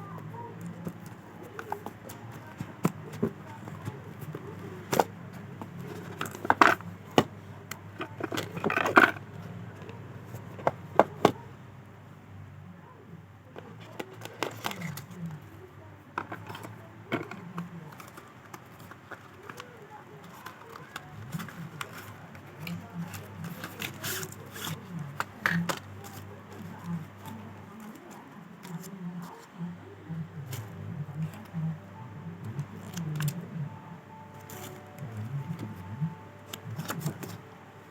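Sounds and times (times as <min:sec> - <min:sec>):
packaging scrapes: 0:16.3 - 0:29.5.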